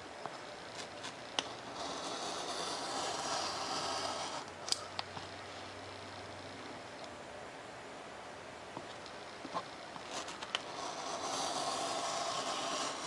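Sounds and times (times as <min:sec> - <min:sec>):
knife cutting foam: 0:00.8 - 0:04.6, 0:10.1 - 0:13.0.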